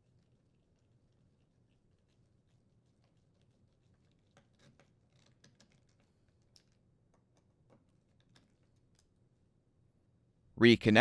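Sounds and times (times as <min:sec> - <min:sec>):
small clicks and taps: 0:04.1 - 0:09.1.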